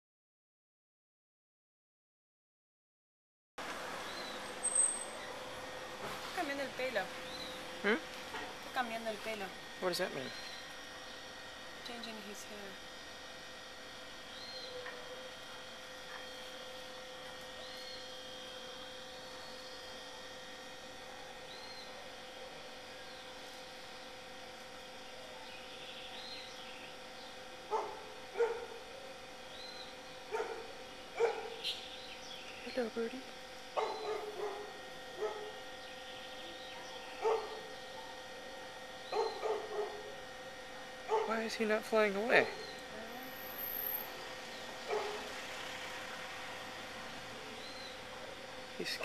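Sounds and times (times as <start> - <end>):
dog barking: 27.7 - 28.9, 30.3 - 31.6, 33.8 - 35.6, 36.8 - 38.3, 39.1 - 40.2, 41.1 - 41.4, 44.9 - 45.3.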